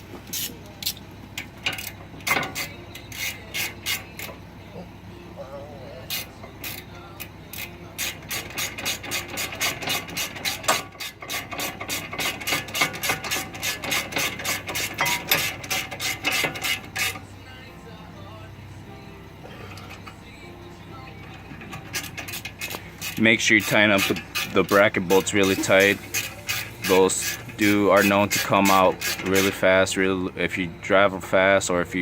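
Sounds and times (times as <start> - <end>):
ratchet wrench clicking: 0.3 - 4.4, 6.1 - 17.2, 21.0 - 29.7.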